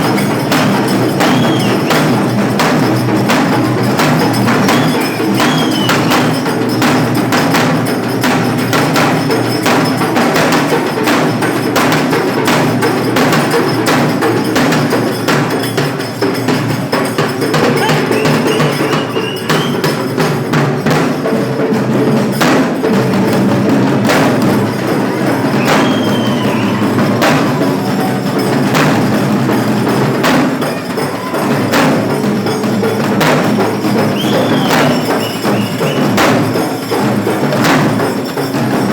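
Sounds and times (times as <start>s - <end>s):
rapid drum strikes: 0.0s - 38.9s
short high notes: 17.8s - 20.0s.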